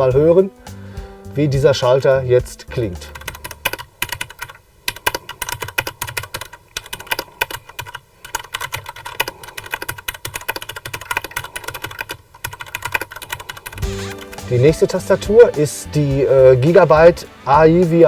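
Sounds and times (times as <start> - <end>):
fast typing key clacks: 3.1 - 14.4.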